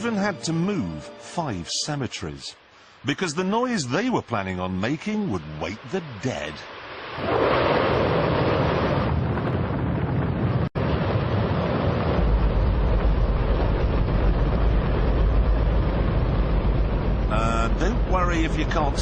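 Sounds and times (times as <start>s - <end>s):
rocket engine roaring: 4.9s - 19.0s.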